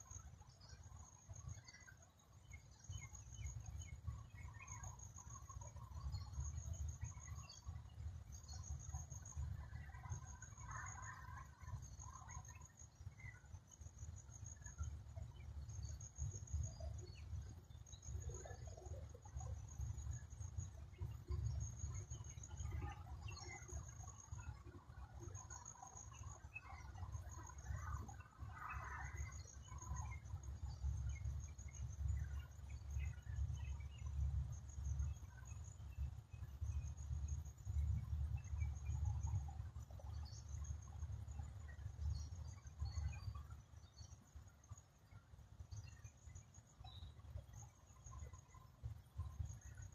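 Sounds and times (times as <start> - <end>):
faint chirps: 0.0 - 49.9
high insect trill: 0.1 - 49.9.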